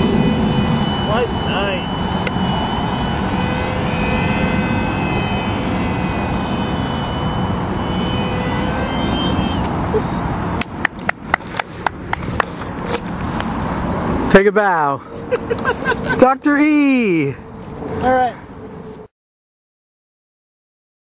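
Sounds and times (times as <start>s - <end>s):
electric model airplane motor whining: 0.0s - 14.3s
wind rumble on microphone: 0.0s - 16.2s
hand claps: 10.6s - 12.5s.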